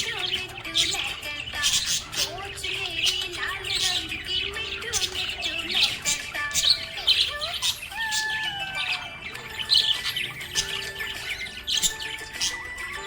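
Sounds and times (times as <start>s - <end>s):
budgerigars chirping and chattering: 0.0s - 13.0s.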